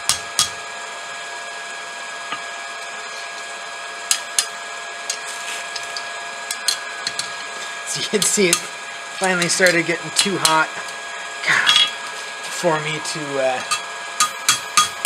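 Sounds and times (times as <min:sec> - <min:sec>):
steady hiss and hum: 0:04.1 - 0:15.0
sharp metal strikes: 0:11.6 - 0:12.0, 0:13.6 - 0:15.0
hammer blows on anvil: 0:13.6 - 0:15.0.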